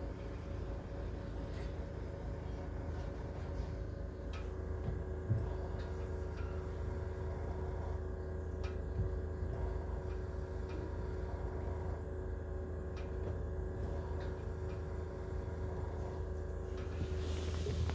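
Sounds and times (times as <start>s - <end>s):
car cabin low hum: 16.8s - 17.9s.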